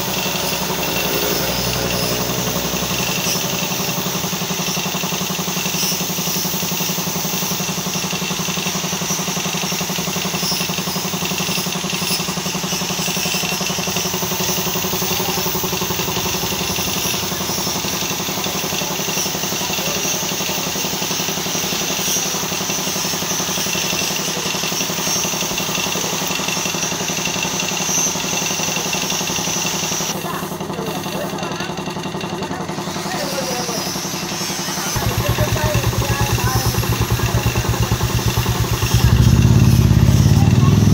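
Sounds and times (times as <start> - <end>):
spray gun air hiss: 0.0 - 9.2
air compressor running: 0.0 - 40.9.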